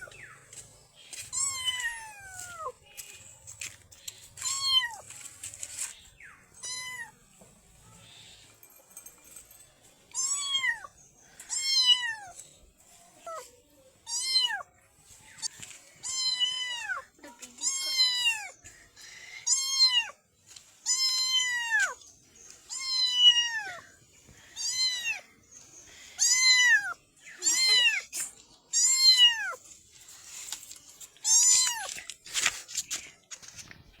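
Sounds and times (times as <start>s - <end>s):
kitten meowing: 16.0s - 17.0s, 22.7s - 23.8s.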